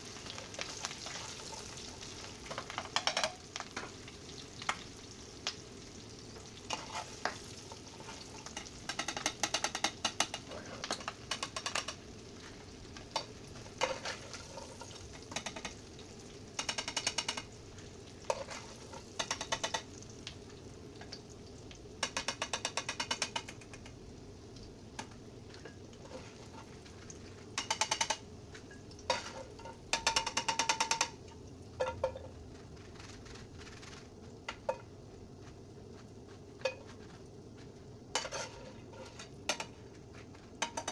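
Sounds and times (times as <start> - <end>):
food sizzling in a pan: 0.0 - 40.9
utensil scraping a pan: 6.5 - 12.0, 13.2 - 15.8, 18.2 - 19.9, 26.0 - 28.2, 29.1 - 31.2, 38.1 - 40.9.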